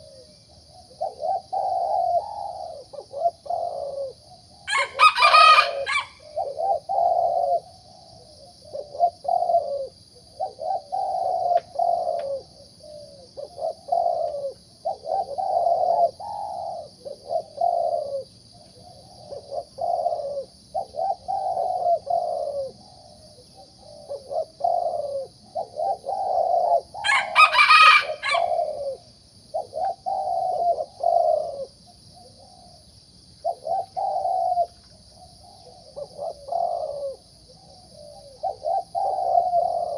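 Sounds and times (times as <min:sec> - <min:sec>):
dove cooing: 0:00.0 - 0:32.8, 0:33.4 - 0:39.9
loud crowing call: 0:04.7 - 0:06.2, 0:27.0 - 0:28.8.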